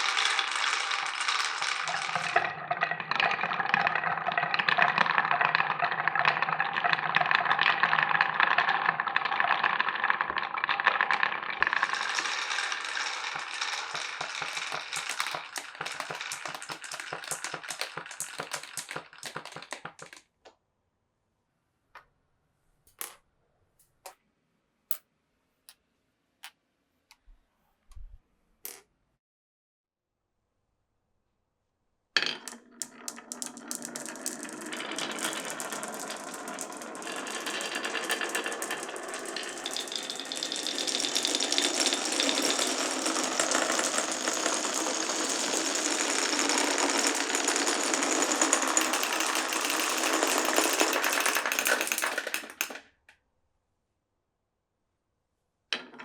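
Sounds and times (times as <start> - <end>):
marbles rattling through wooden run: 0.0 - 20.2, 32.2 - 52.8.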